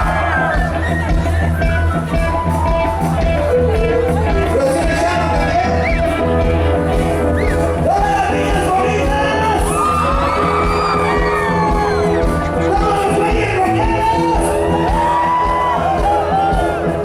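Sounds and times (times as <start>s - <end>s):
crowd shouting: 0.0s - 1.8s, 9.3s - 17.0s
latin music with singing: 0.0s - 6.5s.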